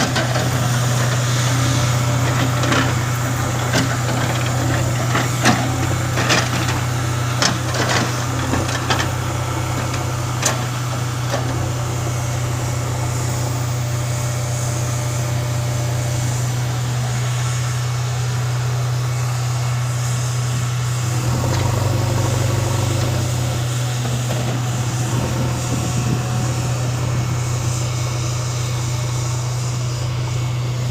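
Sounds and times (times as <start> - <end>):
diesel engine droning: 0.0 - 30.9.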